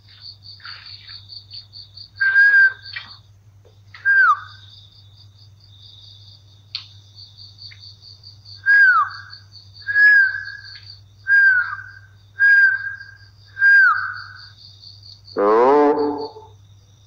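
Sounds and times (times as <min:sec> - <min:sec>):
crickets chirping: 0:00.0 - 0:17.0
whistled downward sliding call: 0:11.3 - 0:14.2.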